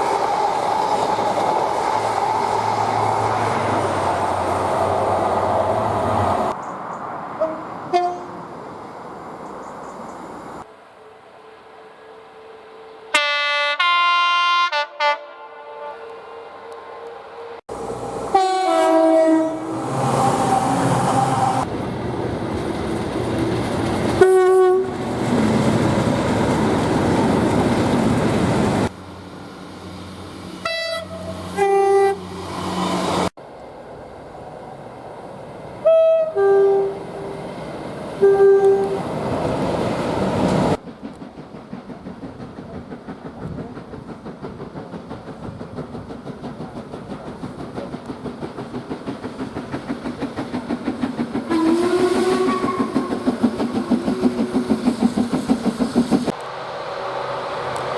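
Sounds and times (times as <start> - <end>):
trains passing: 0.0 - 57.9
locomotive air horns: 7.4 - 8.4, 11.4 - 17.6, 18.3 - 21.7, 24.2 - 25.0, 30.6 - 32.5, 35.8 - 37.4, 38.2 - 39.0, 51.5 - 54.7
train wheels clattering: 39.7 - 56.4.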